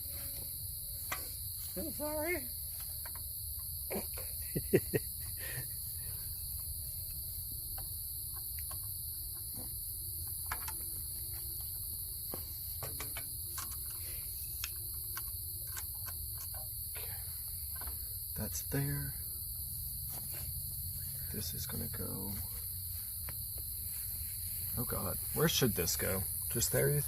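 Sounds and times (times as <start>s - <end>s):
crickets chirping: 0.0s - 27.0s
light clicks and knocks: 7.7s - 17.1s.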